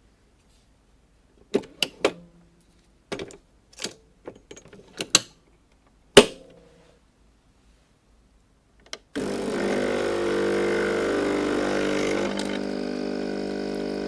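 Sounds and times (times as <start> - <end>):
closing mechanism snapping shut: 3.1 - 5.4, 6.2 - 6.6.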